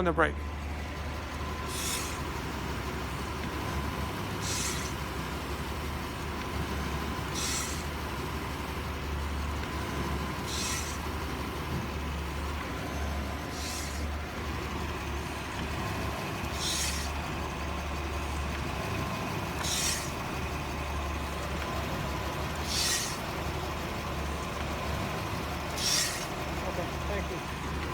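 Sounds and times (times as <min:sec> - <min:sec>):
engine idling: 0:00.0 - 0:27.9
short hiss of air: 0:01.7 - 0:02.2, 0:04.4 - 0:05.0, 0:07.3 - 0:07.9, 0:10.5 - 0:11.0, 0:13.5 - 0:14.1, 0:16.6 - 0:17.1, 0:19.6 - 0:20.1, 0:22.7 - 0:23.2, 0:25.8 - 0:26.3.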